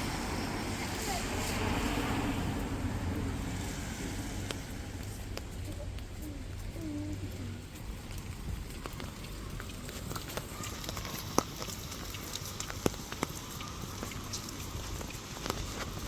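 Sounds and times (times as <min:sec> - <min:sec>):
rain on a wet street: 0:00.0 - 0:16.0
sharp drips ticking: 0:00.0 - 0:16.0.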